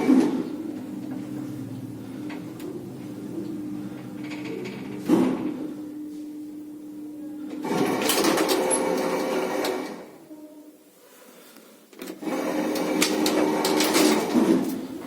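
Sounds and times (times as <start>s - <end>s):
lift machinery rattle and hum: 12.2s - 15.0s.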